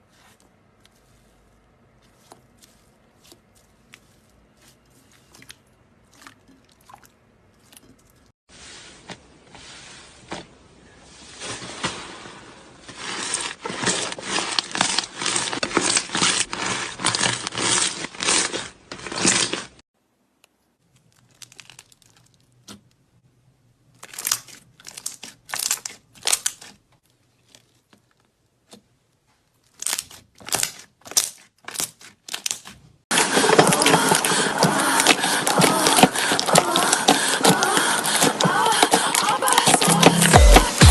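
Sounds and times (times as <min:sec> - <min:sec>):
slime crackling and popping: 0:20.9 - 0:22.8.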